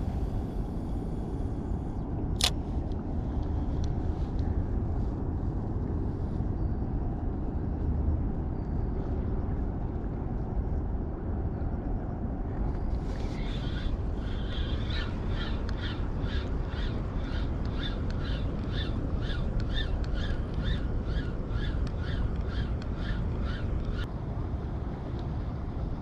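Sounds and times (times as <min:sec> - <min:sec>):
low outdoor rumble: 0:00.0 - 0:26.0
bird calls: 0:13.2 - 0:24.0.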